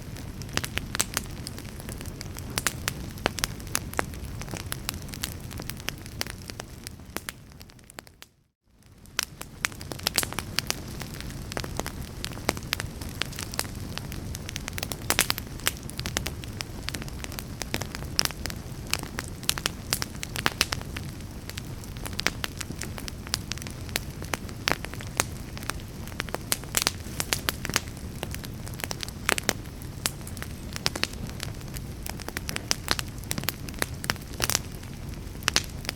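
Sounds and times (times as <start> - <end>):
fire crackling: 0.0 - 35.9.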